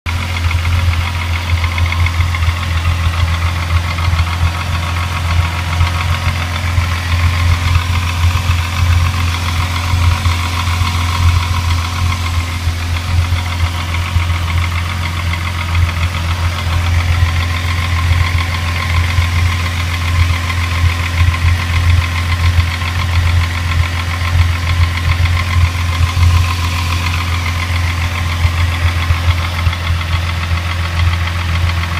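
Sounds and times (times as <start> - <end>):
car engine idling with knocking: 0.0 - 31.9.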